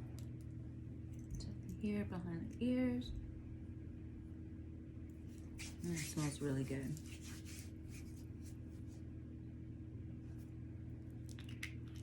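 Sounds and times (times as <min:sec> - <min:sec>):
low steady hum: 0:00.0 - 0:12.0
soft rustles: 0:05.3 - 0:09.0.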